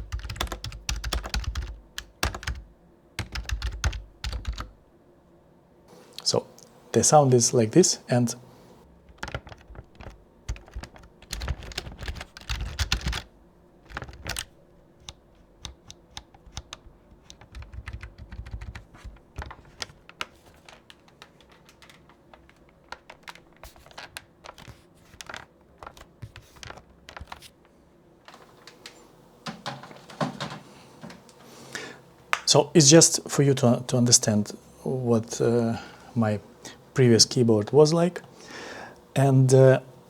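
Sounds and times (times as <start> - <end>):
keyboard typing clicks: 0.0 - 2.6.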